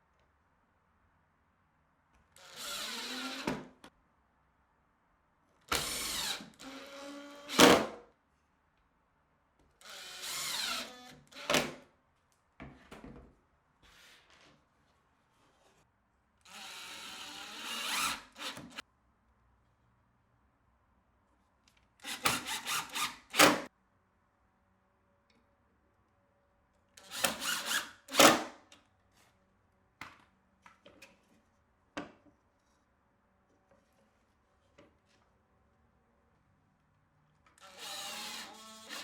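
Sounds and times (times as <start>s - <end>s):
power drill bursts: 5.8s - 6.8s, 9.9s - 11.5s, 37.6s - 39.0s.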